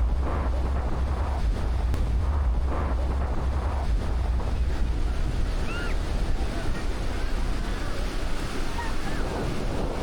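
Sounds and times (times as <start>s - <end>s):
wind buffeting microphone: 0.0s - 10.0s
sea surf washing: 2.8s - 10.0s.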